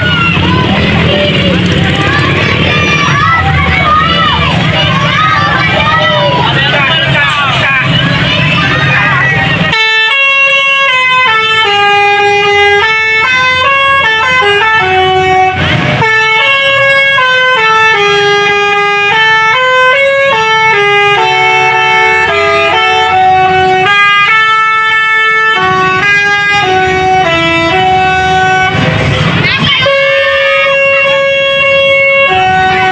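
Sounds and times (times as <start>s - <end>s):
musical bus air horn: 9.3s - 32.9s.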